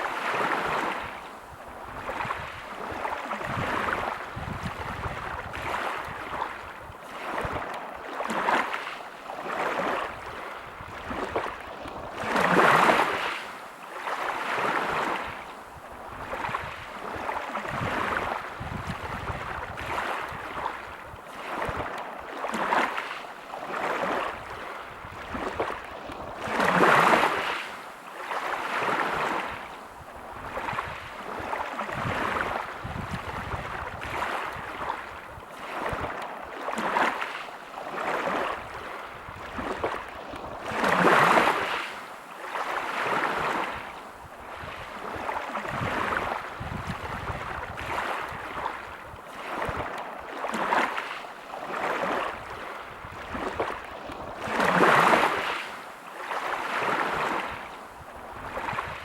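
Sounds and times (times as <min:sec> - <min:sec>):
waves washing over pebbles: 0:00.0 - 0:59.0.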